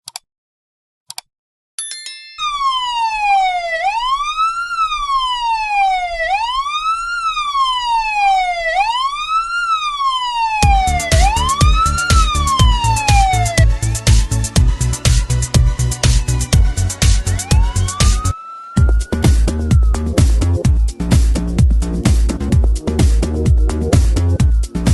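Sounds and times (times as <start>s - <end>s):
police siren wailing: 2.4s - 24.9s
music with drum beat: 10.6s - 24.9s.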